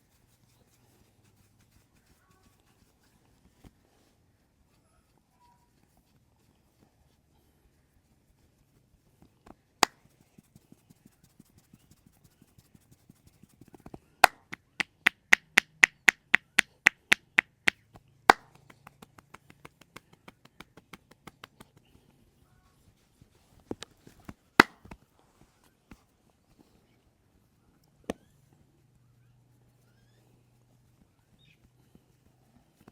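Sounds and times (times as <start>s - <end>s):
loud sharp hand claps: 9.8s - 10.0s, 14.2s - 17.5s, 18.3s - 21.8s, 24.6s - 24.9s
hands tapping in massage: 9.8s - 22.0s, 24.2s - 25.0s.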